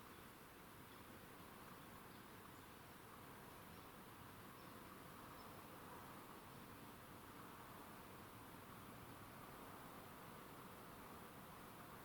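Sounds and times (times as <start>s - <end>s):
faint background hiss: 0.0s - 12.0s.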